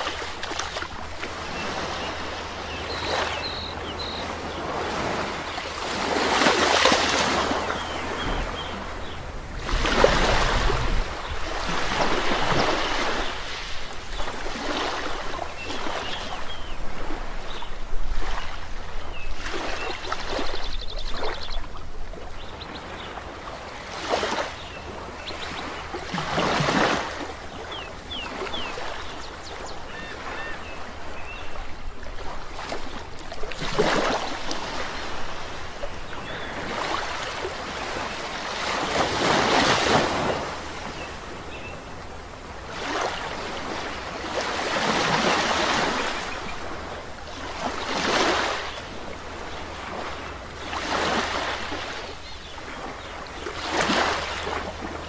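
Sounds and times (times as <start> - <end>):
sea waves washing onto shore: 0.0 - 22.4, 23.2 - 55.0
small birds chirping: 1.6 - 4.7, 27.5 - 31.6
bird trill: 2.7 - 4.3.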